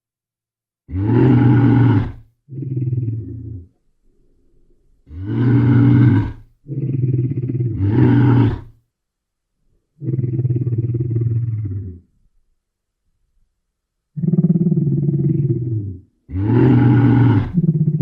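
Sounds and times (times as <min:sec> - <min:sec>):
bear roaring and growling: 0:00.9 - 0:03.8, 0:05.1 - 0:08.8, 0:10.0 - 0:12.1, 0:14.2 - 0:18.0.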